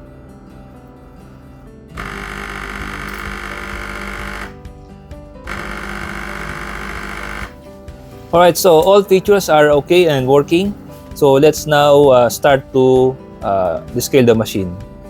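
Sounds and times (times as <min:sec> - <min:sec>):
coffee machine pump buzzing and hissing: 0:01.9 - 0:04.7, 0:05.4 - 0:08.2.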